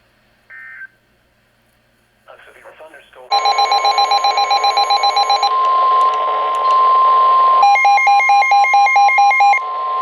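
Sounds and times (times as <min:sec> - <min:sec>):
steady warning alarm tone: 0:03.3 - 0:10.0.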